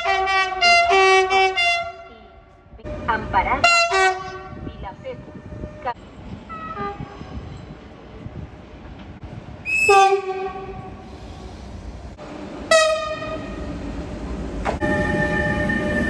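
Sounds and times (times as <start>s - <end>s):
train horn blasts: 0.0s - 2.3s, 2.9s - 5.9s, 6.5s - 7.6s, 9.7s - 10.9s, 12.7s - 13.6s, 14.8s - 16.0s
train rumble: 2.4s - 16.0s.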